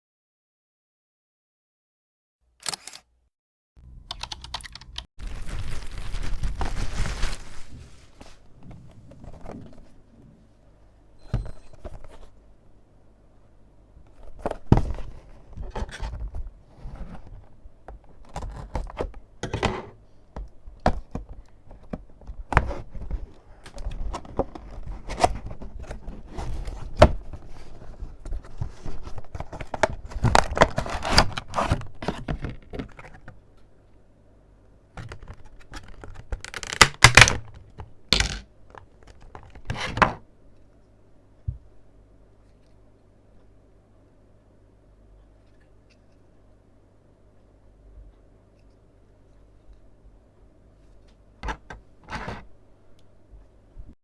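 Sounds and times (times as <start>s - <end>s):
packaging tearing and crinkling: 4.0s - 8.4s, 35.1s - 38.4s
packaging knocks and thunks: 35.0s - 38.4s.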